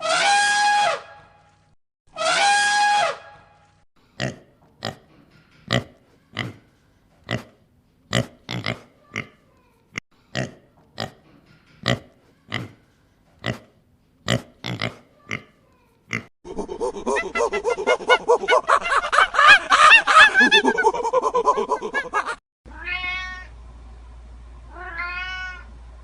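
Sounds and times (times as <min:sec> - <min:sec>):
pig grunting: 0:05.7 - 0:09.4, 0:14.3 - 0:18.7.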